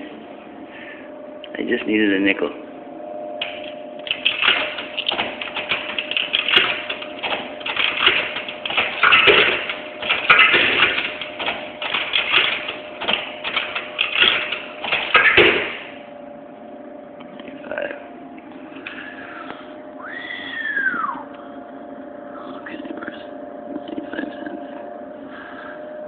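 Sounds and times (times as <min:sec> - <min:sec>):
steady low hum: 0:00.0 - 0:26.0
coins clicking and rattling: 0:04.0 - 0:15.6.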